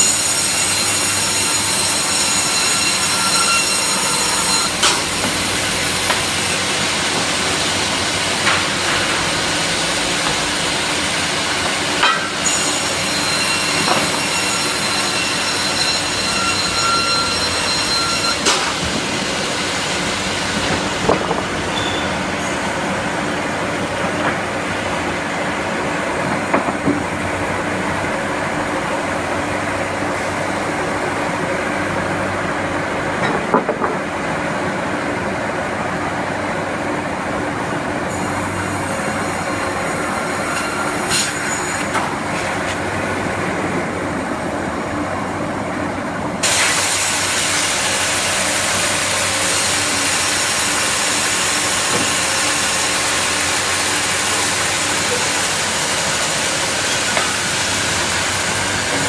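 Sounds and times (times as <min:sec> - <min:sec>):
sawmill machinery hum: 0:00.0 - 0:59.0
loud hissing noise: 0:46.4 - 0:59.0.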